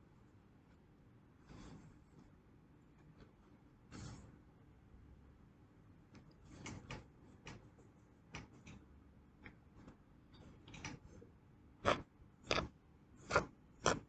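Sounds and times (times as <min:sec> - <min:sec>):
taps and scrapes in kinetic sand: 0:11.8 - 0:14.0.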